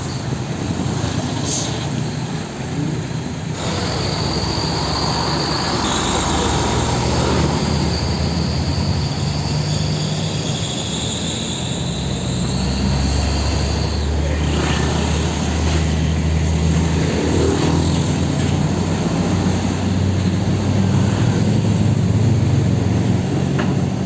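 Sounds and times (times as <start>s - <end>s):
heavy diesel engine running: 0.0s - 24.0s.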